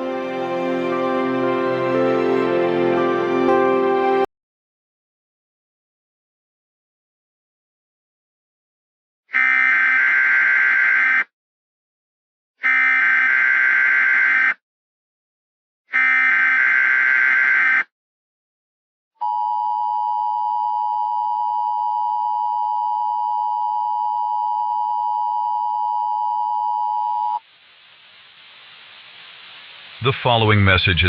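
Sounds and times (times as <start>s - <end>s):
faint hiss: 27.4s - 31.0s.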